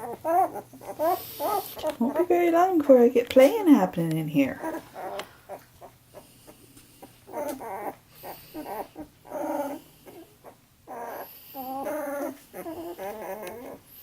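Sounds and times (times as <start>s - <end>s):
puppies crying: 0.0s - 2.6s, 4.6s - 14.0s.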